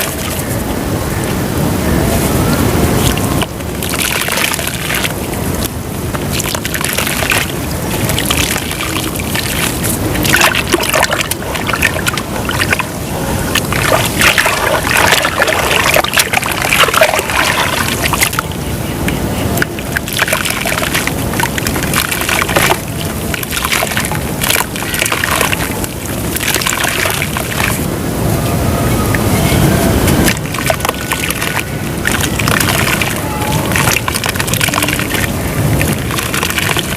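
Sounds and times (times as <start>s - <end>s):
water splashing and sloshing: 0.0s - 36.9s
dirt crumbling in water: 3.0s - 12.9s.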